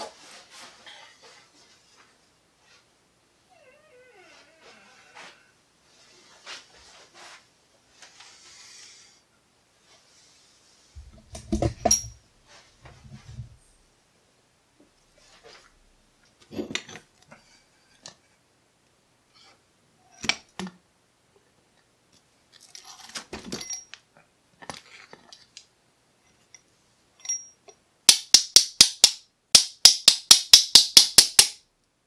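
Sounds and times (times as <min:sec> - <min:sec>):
lock parts clicking and rattling: 0:11.2 - 0:12.2.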